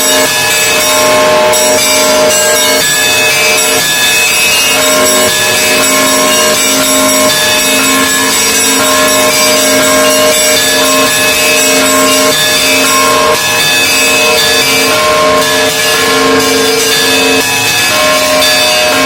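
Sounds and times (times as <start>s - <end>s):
many bells ringing: 0.0s - 19.0s.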